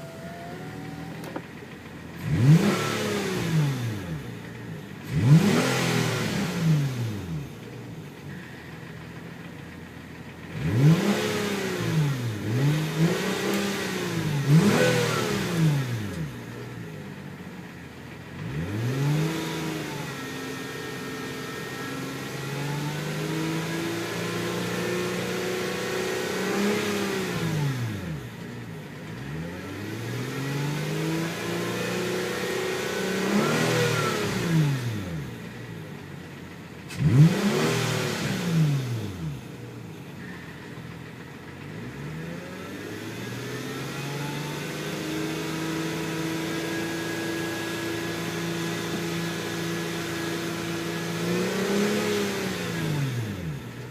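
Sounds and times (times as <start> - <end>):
whine rising with engine speed: 0.0 - 4.3
car engine revving: 0.0 - 53.9.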